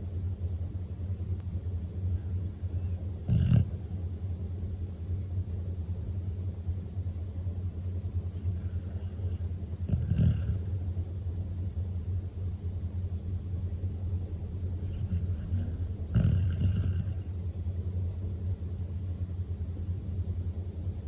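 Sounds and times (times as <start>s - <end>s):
dog snoring: 2.2s - 4.1s, 8.4s - 11.0s, 14.8s - 17.6s.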